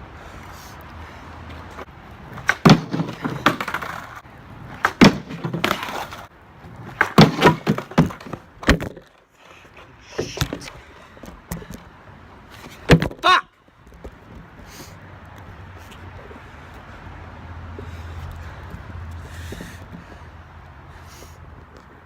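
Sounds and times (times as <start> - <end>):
skateboard wheels rolling: 1.4 - 13.1
skateboard popping and slapping: 1.8 - 11.9, 12.6 - 13.2.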